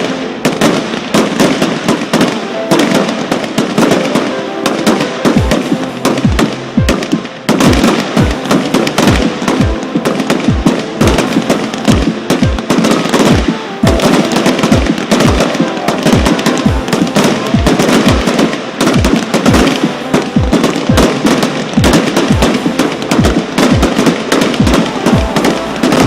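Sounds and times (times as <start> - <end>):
fireworks crackling and banging: 0.0 - 26.0
music with thumping beat: 5.4 - 15.5, 16.1 - 26.0.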